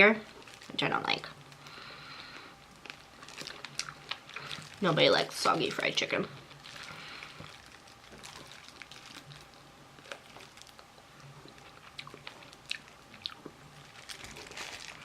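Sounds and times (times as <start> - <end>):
chewing and biting fried chicken: 6.6 - 15.0.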